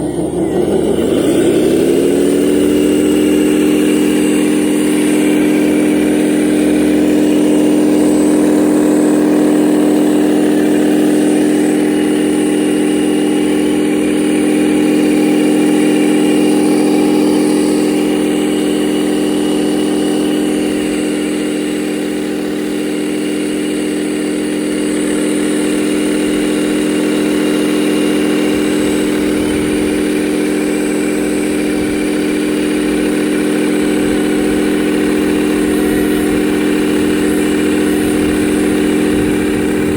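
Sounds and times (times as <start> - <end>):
hydraulic model mechanical drone: 0.0 - 39.9
faint high whine: 26.4 - 39.9.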